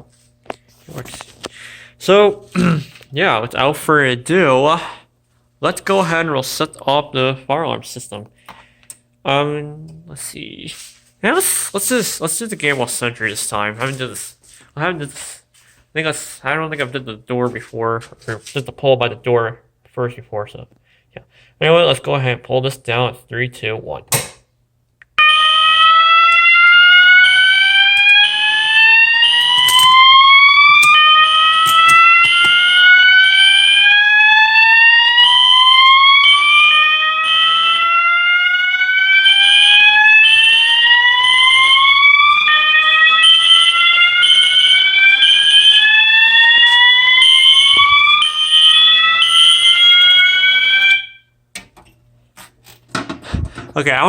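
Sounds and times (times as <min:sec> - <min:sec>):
pulsing high-pitched alarm horn: 0:25.2 - 0:51.4
whooping alarm sweeps: 0:25.2 - 0:51.4.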